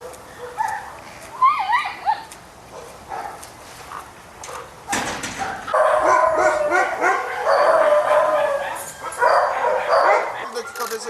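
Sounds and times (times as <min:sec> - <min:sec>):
dogs yelping: 0:01.7 - 0:11.0
dogs whining: 0:05.4 - 0:11.0.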